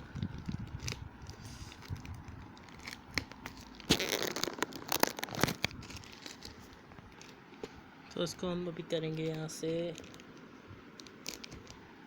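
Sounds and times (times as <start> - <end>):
packaging crinkling and tearing: 0.1 - 7.4, 9.2 - 11.8
packaging rustling and clicking: 0.1 - 7.4, 9.2 - 11.8.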